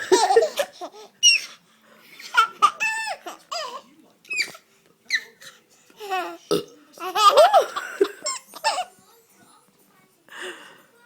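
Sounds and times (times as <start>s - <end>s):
baby laughing: 0.0s - 1.5s, 2.2s - 5.4s, 7.0s - 8.9s.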